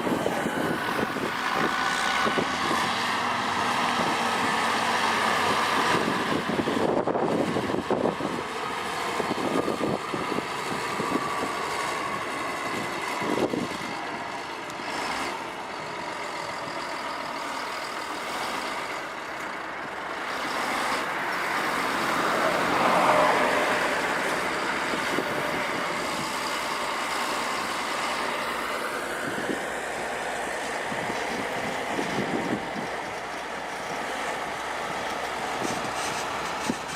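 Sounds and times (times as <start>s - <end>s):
heavy diesel machinery running: 0.0s - 36.9s.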